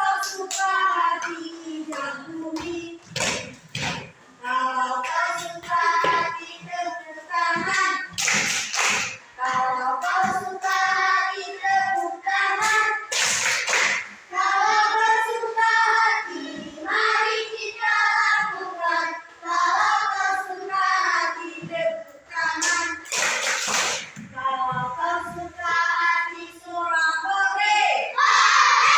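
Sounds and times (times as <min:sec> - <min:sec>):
young children singing: 0:00.0 - 0:28.9.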